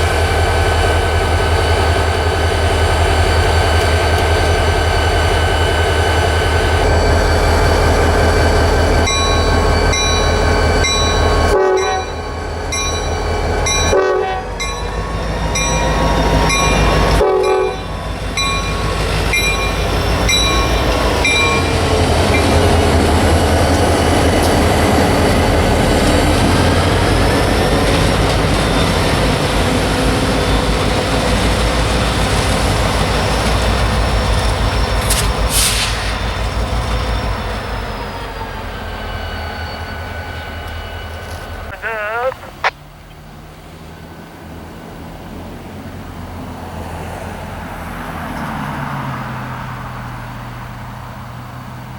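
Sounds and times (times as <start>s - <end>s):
train engine and rail rumble: 0.0s - 51.9s
crossing bell ringing: 6.6s - 35.2s, 36.4s - 42.5s
locomotive horn blasts: 11.4s - 12.2s, 13.8s - 14.6s, 17.2s - 17.8s.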